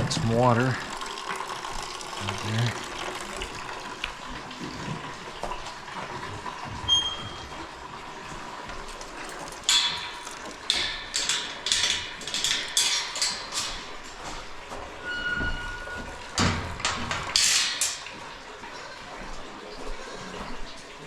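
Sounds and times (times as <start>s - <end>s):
splashing gushes of water: 0.0s - 6.8s
water running into a bowl: 0.0s - 14.2s.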